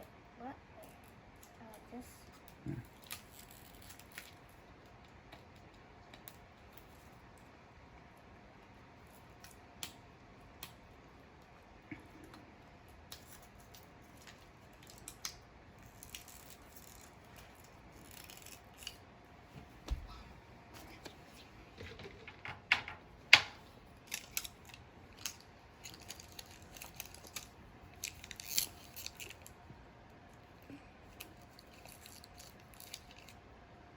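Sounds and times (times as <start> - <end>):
packaging peeled open: 24.0 - 29.5.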